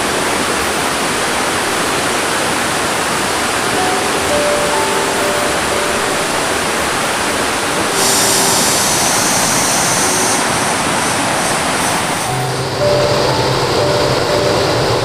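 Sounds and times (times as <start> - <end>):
river water rushing: 0.0 - 15.0
high even buzz: 3.8 - 15.0.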